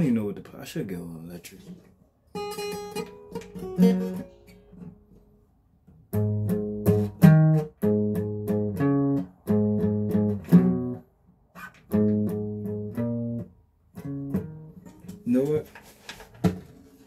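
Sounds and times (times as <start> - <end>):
guitar plucked and strummed: 1.7 - 15.6.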